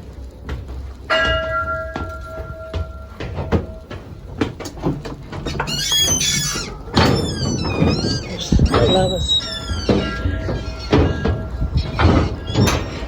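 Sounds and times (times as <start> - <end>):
scattered knocks: 1.1 - 6.2, 6.9 - 13.0
bell ringing: 8.8 - 13.0.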